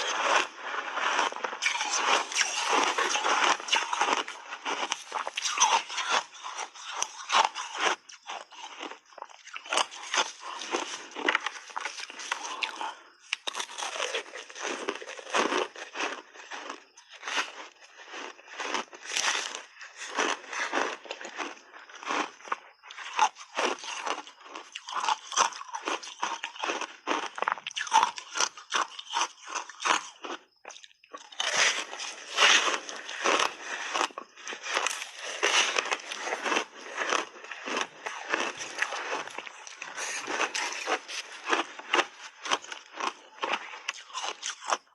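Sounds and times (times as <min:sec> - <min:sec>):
ice being chewed: 0:00.0 - 0:44.9.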